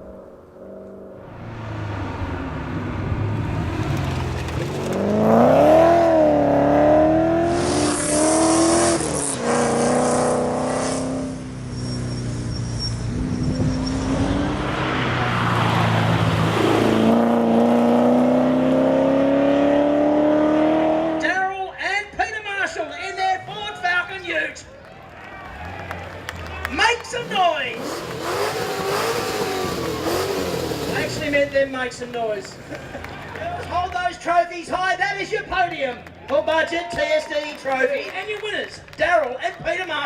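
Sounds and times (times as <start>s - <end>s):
car engine accelerating hard: 0.1s - 21.2s, 25.4s - 34.0s.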